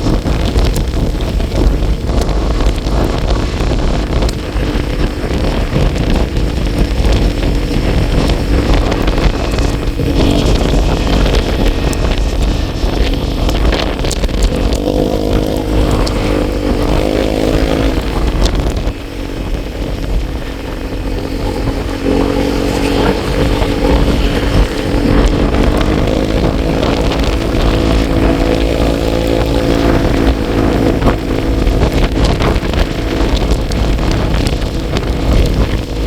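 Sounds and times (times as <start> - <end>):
road and wind rumble: 0.0 - 36.0
vehicle engine running: 0.0 - 36.0.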